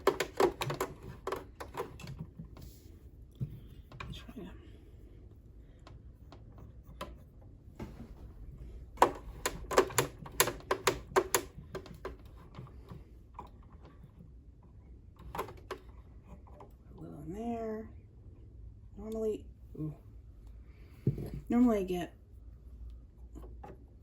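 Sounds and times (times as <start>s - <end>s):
tools clicking on sewing machine: 0.0s - 2.2s, 9.0s - 12.3s.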